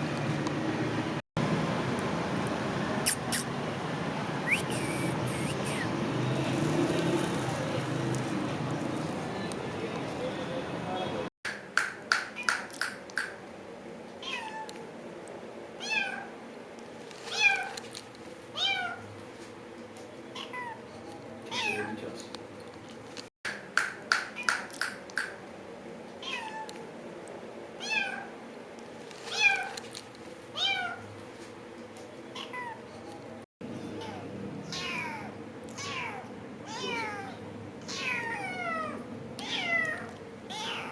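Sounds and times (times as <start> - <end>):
cat meowing: 34.0 - 40.9.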